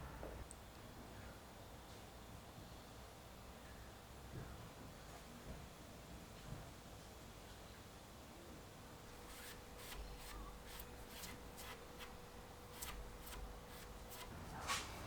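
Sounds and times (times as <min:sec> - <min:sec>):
rubbing strokes on wood tabletop: 0:09.1 - 0:15.0.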